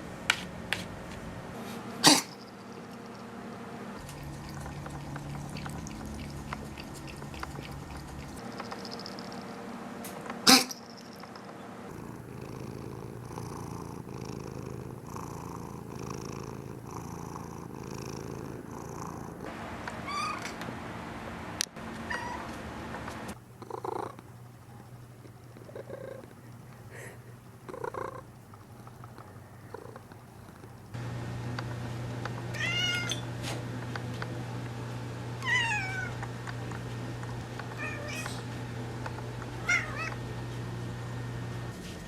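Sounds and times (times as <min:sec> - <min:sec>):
cat purring: 0:04.0 - 0:09.4, 0:11.9 - 0:19.5, 0:23.5 - 0:31.0.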